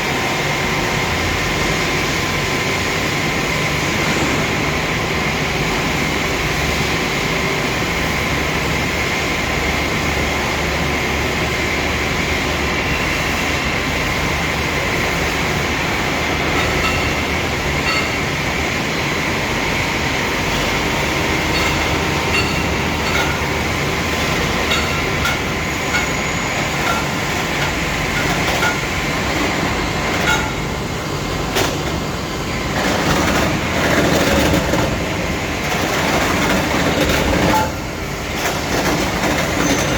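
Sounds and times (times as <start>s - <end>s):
machine running with hum and whine: 0.0s - 39.9s
clacks and rattles: 21.5s - 30.7s.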